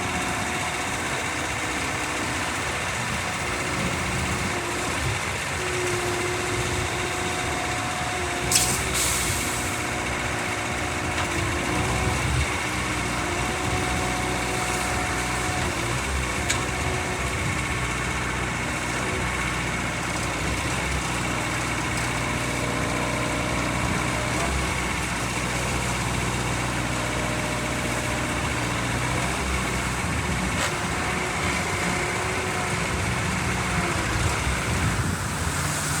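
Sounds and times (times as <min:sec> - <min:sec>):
diesel engine running: 0:00.0 - 0:36.0.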